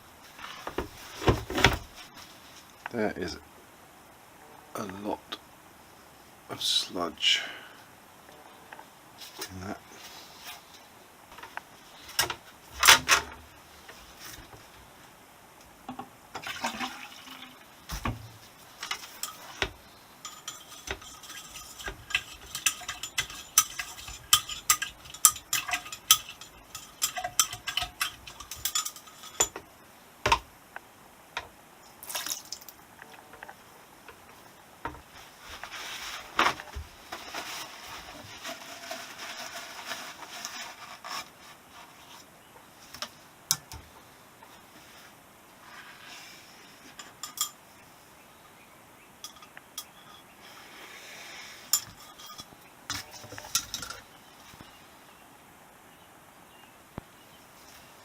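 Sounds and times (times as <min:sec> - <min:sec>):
metal parts knocking: 0:18.8 - 0:29.6
metal parts clinking: 0:20.2 - 0:29.6.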